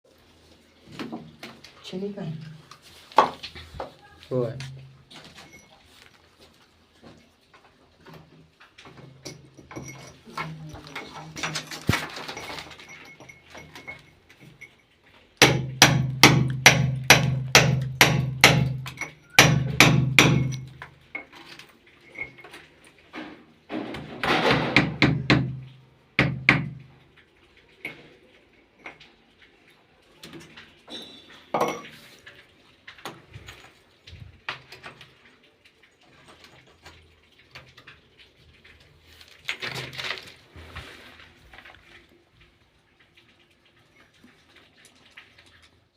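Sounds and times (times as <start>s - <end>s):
hammer strikes: 15.4s - 20.6s.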